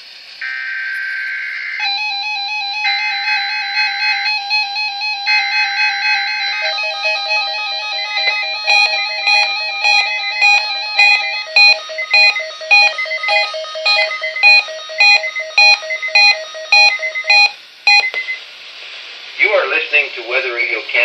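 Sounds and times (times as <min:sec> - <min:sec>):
electronic synth music: 0:01.8 - 0:17.5.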